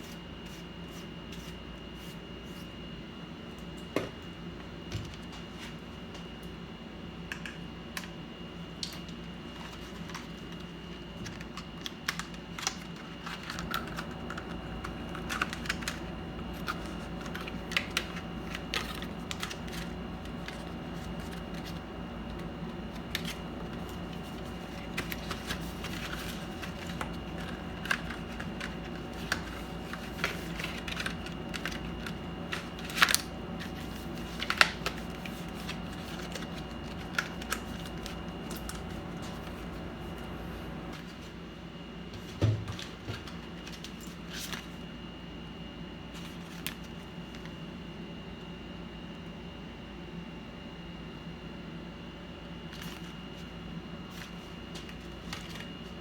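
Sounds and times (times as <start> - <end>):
steady low hum: 0.0 - 48.9.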